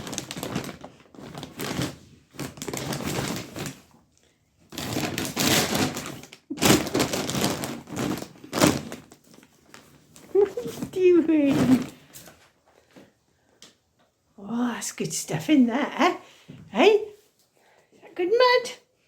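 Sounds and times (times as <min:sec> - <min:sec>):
rustling and crinkling: 0:00.0 - 0:14.2.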